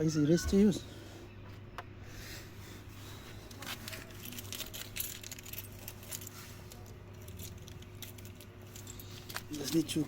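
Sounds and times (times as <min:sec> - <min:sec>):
light clicks and metallic rattles: 0:03.4 - 0:10.0.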